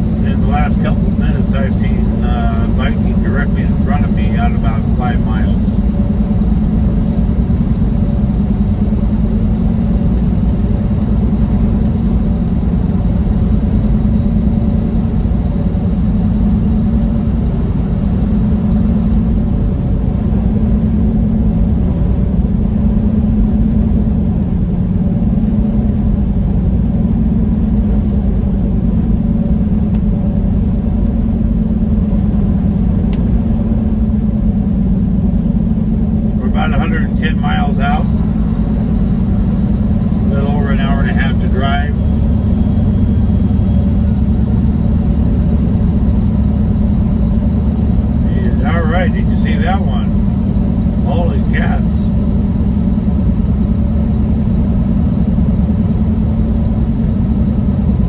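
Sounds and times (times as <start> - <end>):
truck engine and road noise droning: 0.0 - 58.0.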